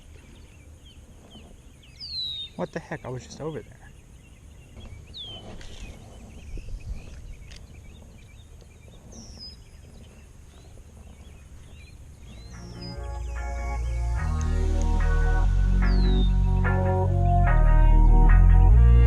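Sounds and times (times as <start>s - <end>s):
low steady rumble: 5.6s - 19.0s
bird chirps and whistles: 11.8s - 14.0s, 15.4s - 16.7s.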